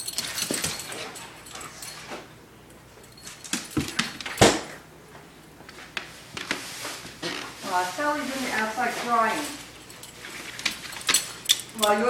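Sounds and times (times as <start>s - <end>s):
dog paws scuffling and clicking: 0.0s - 2.4s, 3.0s - 4.6s, 5.6s - 12.0s.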